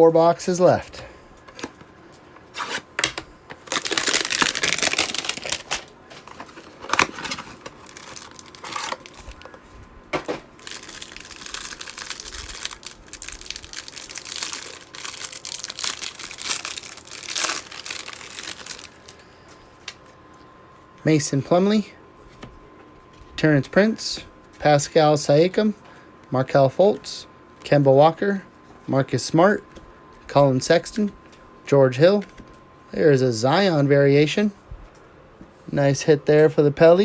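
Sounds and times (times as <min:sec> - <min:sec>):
cardboard tearing: 0:02.5 - 0:09.4, 0:10.6 - 0:19.0
packaging crinkling: 0:02.5 - 0:09.6, 0:10.2 - 0:19.3.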